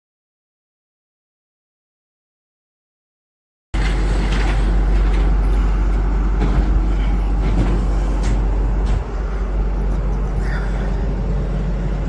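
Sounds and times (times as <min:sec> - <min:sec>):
truck engine idling: 0:03.8 - 0:12.0.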